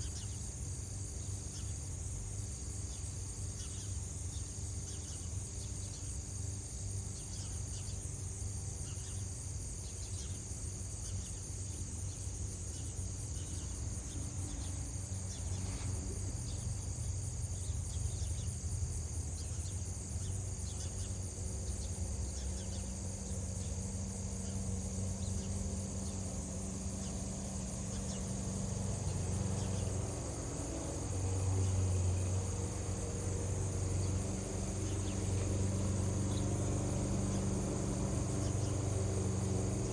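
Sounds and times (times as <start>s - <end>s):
insect chirring: 10.2s - 39.9s.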